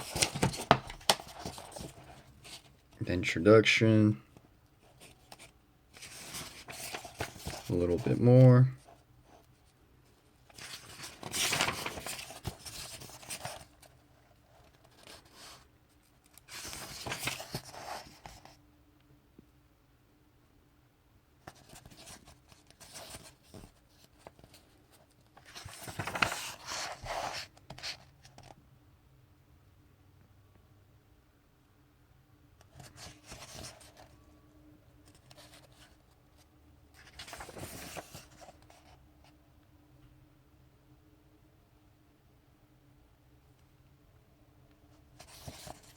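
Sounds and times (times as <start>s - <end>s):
pages turning: 0.0s - 2.7s, 5.0s - 8.2s, 10.5s - 13.9s, 16.2s - 18.6s, 25.3s - 28.5s, 32.7s - 34.1s, 35.0s - 36.0s, 37.0s - 38.9s, 45.2s - 45.9s.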